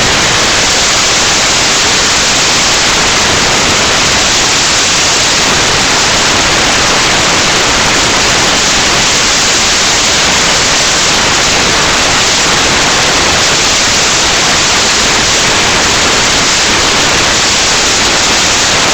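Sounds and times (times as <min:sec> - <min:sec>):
steady static hiss: 0:00.0 - 0:18.9.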